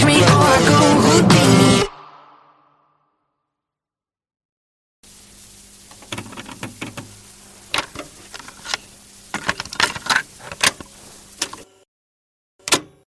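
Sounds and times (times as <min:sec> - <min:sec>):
clicking and rattling: 0:05.9 - 0:11.6.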